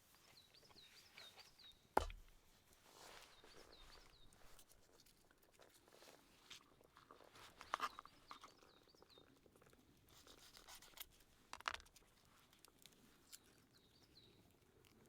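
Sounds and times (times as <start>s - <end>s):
small bird chirping: 3.1s - 4.8s, 7.6s - 9.7s.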